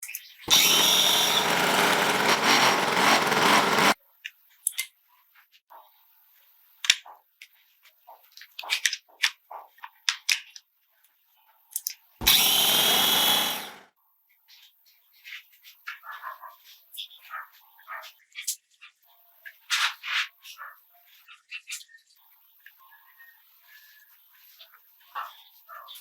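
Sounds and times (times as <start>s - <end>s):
power drill running: 0.5s - 4.0s, 12.2s - 13.8s.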